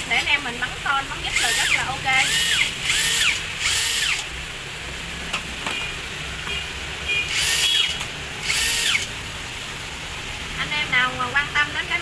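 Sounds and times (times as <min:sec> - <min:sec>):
cordless screwdriver motor whirring: 0:01.3 - 0:04.3, 0:07.3 - 0:09.1.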